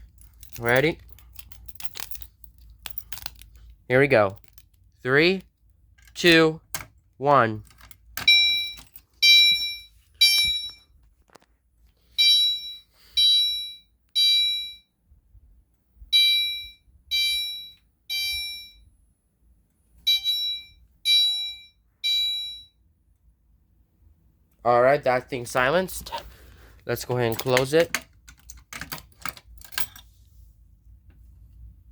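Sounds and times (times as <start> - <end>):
fire alarm sounder tones: 8.2 - 10.9, 12.2 - 15.0, 16.1 - 19.0, 20.0 - 22.8.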